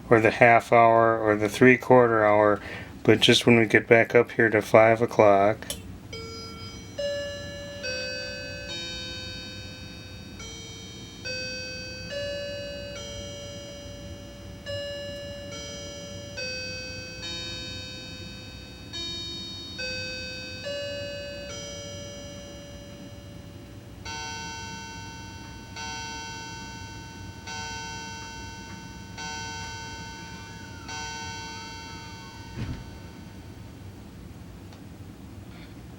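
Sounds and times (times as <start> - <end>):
clock hour strikes: 0.0 - 33.8
clock chime melody: 6.1 - 33.7
brief knock: 32.6 - 32.9.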